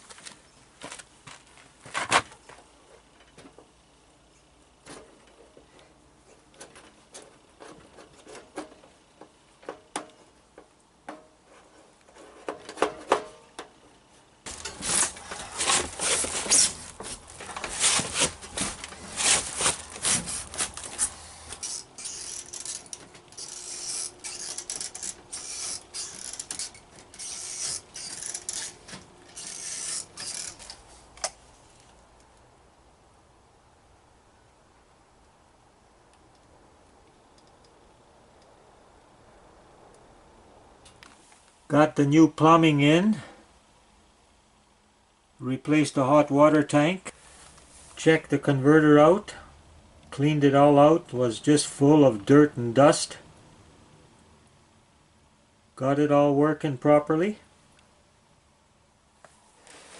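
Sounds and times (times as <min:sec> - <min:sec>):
rapid rasping rubbing strokes: 0:15.0 - 0:30.7
scattered clicks and knocks: 0:17.0 - 0:31.4.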